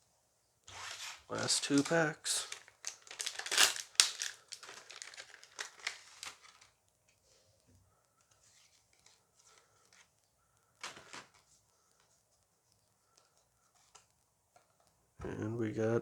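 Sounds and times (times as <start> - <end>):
plastic wrapper crinkling and tearing: 0.8 - 6.8.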